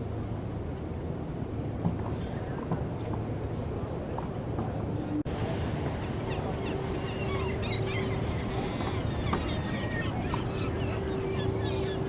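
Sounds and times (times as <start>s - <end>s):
held hum: 4.7s - 12.0s.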